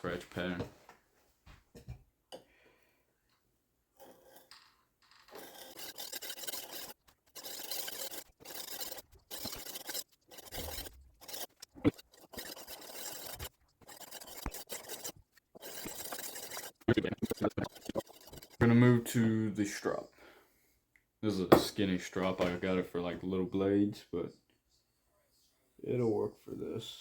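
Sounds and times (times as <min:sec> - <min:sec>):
knife scraping on sharpening stone: 0:05.3 - 0:18.6.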